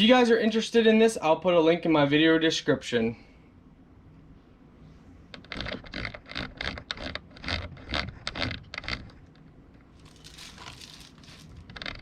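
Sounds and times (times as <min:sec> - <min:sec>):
objects clicking and scraping: 0:10.0 - 0:12.0.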